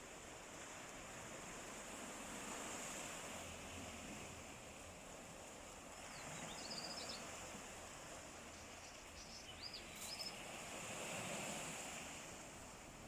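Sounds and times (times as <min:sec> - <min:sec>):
sea waves washing on shore: 0:00.0 - 0:13.0
high bird chirps: 0:09.2 - 0:10.4.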